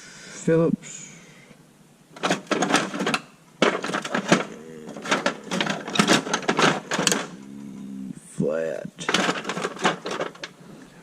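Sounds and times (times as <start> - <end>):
hand tools clattering: 2.2 - 7.9, 9.0 - 10.7.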